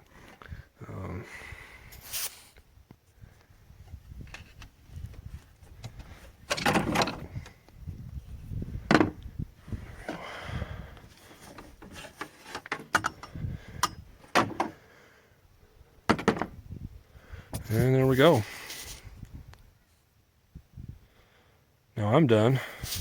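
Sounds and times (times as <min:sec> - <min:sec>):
short rubbing scrape: 0:01.9 - 0:02.6.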